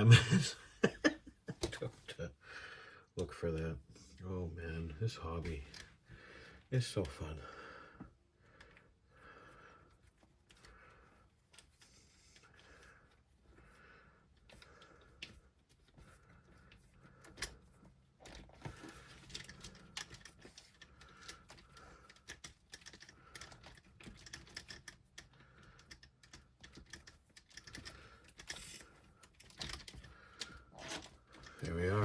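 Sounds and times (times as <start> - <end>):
small parts and tools clicking: 5.3 - 6.0, 9.8 - 13.6, 14.2 - 32.0.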